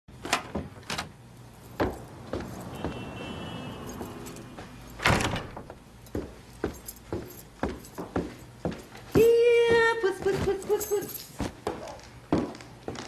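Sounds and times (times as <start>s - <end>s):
door clunks and knocks: 0.2s - 1.2s, 5.0s - 6.3s.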